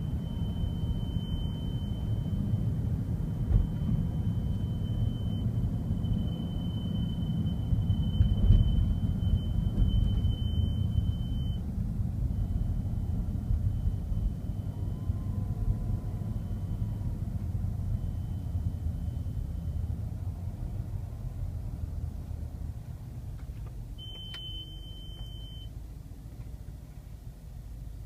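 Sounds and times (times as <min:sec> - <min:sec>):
faint high-pitched beeping: 0:00.0 - 0:11.6, 0:12.3 - 0:20.0, 0:24.0 - 0:25.7
low rumble of car moving: 0:00.0 - 0:28.0.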